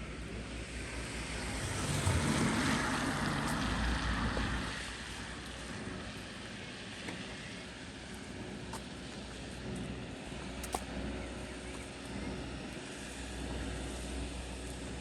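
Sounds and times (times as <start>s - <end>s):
tyres hissing on wet road: 0.7s - 5.7s.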